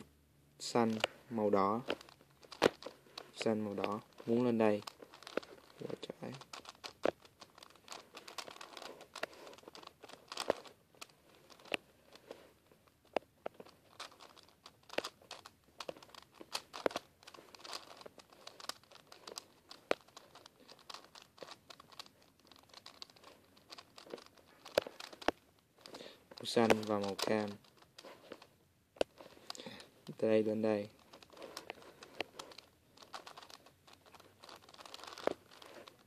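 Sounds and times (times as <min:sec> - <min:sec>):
puzzle cube plastic layers clicking: 0:00.6 - 0:36.0.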